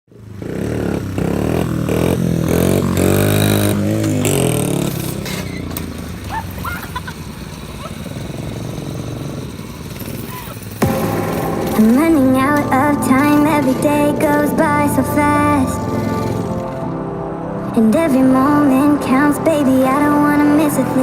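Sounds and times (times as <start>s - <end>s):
mini bike engine revving: 0.1s - 16.9s.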